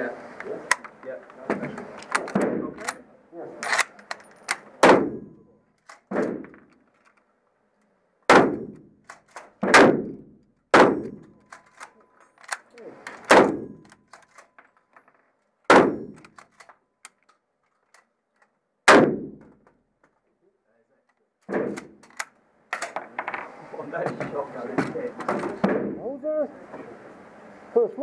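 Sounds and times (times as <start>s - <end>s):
rifle shots with echo: 4.8s - 5.4s, 8.3s - 8.9s, 9.6s - 11.3s, 13.2s - 13.9s, 15.7s - 16.4s, 18.9s - 19.5s.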